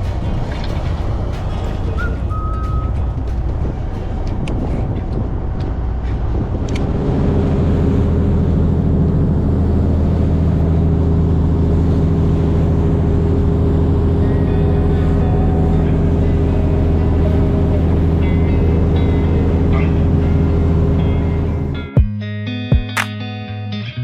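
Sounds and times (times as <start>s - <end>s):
boat engine droning: 0.0s - 21.9s
sharp clicks: 22.9s - 23.2s.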